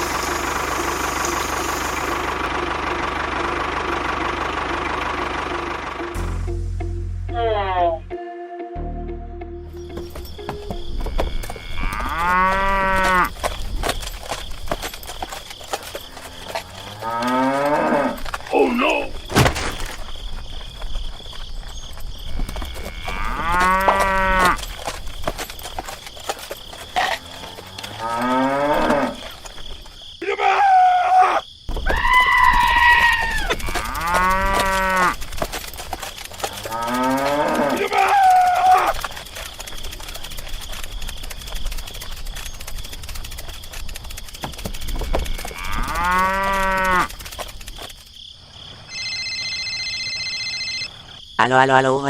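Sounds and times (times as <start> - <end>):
cattle mooing: 11.2 - 13.3, 16.1 - 19.1, 22.4 - 24.6, 27.0 - 29.3, 32.8 - 35.2, 36.4 - 39.0, 45.0 - 47.1.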